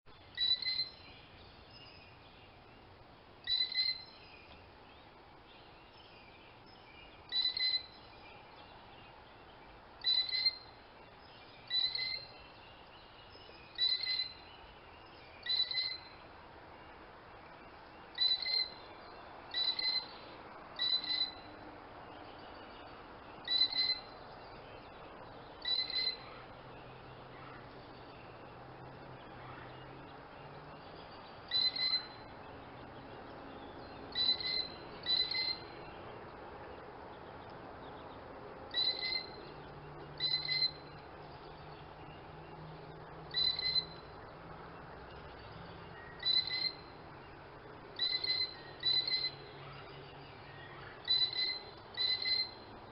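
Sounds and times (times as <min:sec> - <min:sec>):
faint outdoor hiss: 0:00.1 - 0:52.9
bird calling high-pitched: 0:00.3 - 0:01.1, 0:03.4 - 0:04.2, 0:07.3 - 0:08.0, 0:10.0 - 0:10.8, 0:11.7 - 0:12.4, 0:13.7 - 0:14.4, 0:15.4 - 0:16.2, 0:18.1 - 0:18.9, 0:19.5 - 0:21.5, 0:23.4 - 0:24.2, 0:25.6 - 0:26.6, 0:31.5 - 0:32.4, 0:34.1 - 0:35.8, 0:38.7 - 0:39.5, 0:40.2 - 0:41.0, 0:43.3 - 0:44.2, 0:45.9 - 0:47.0, 0:48.0 - 0:49.8, 0:50.5 - 0:52.7.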